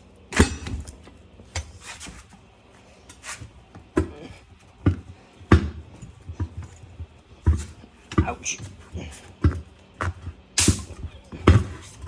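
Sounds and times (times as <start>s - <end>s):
tire thumping and knocking: 3.7s - 12.0s.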